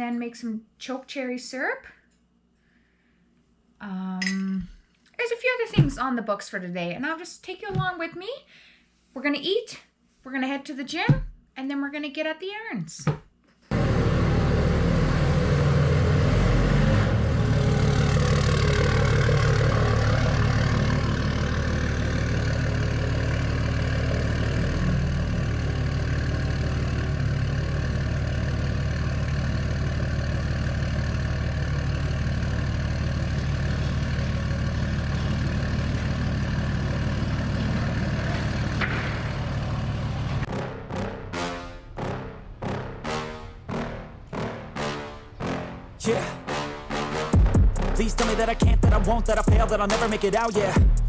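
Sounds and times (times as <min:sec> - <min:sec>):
vehicle engine running: 0:13.7 - 0:40.9, 0:47.4 - 0:51.0.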